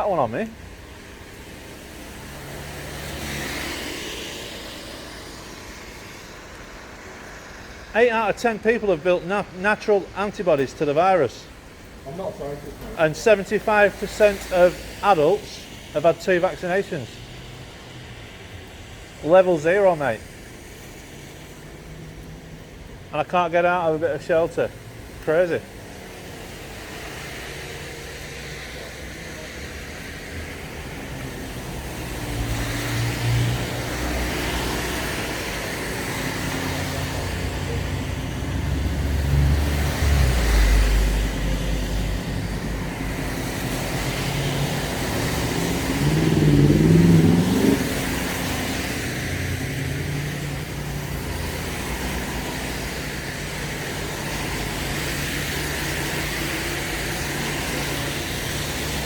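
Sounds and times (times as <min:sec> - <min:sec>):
road traffic passing: 0:00.0 - 0:59.0
louder vehicle passing: 0:00.1 - 0:11.5, 0:25.3 - 0:59.0
engine revving: 0:26.5 - 0:59.0.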